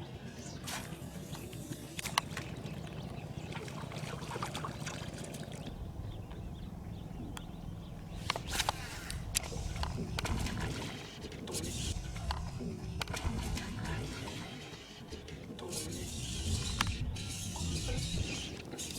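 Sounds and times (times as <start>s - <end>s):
low rumble of water and wind: 2.0s - 14.4s.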